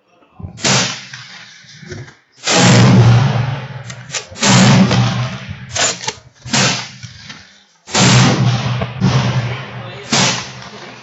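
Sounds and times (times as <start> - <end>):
rifle shots with echo: 2.4 - 7.0, 7.9 - 11.0.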